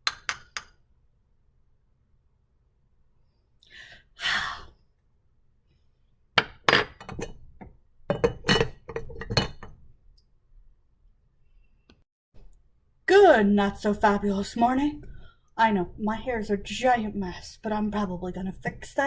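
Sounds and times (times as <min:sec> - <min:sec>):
hard objects clinking and clattering: 0:06.4 - 0:09.8.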